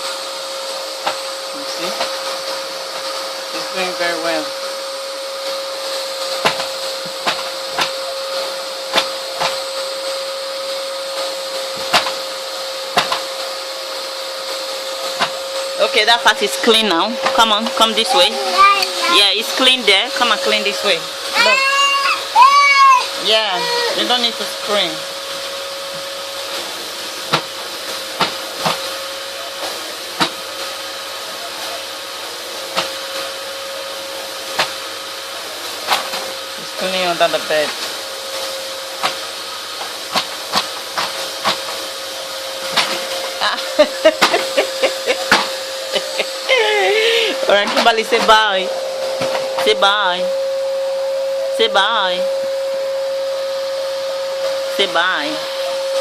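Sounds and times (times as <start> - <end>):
vacuum cleaner whining: 0.0 - 56.0
vacuum knocking on floor: 6.4 - 8.1, 8.9 - 9.7, 11.6 - 12.3, 12.9 - 13.4, 15.1 - 15.4, 16.0 - 21.1, 25.9 - 26.1, 27.2 - 28.9, 29.6 - 30.4, 39.8 - 41.9, 42.6 - 46.4, 47.0 - 49.8.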